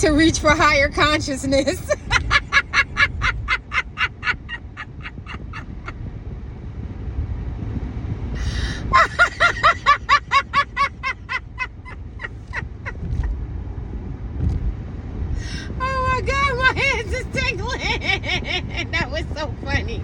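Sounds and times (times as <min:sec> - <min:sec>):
woman laughing: 0:01.5 - 0:06.0, 0:08.4 - 0:13.3, 0:15.4 - 0:19.4.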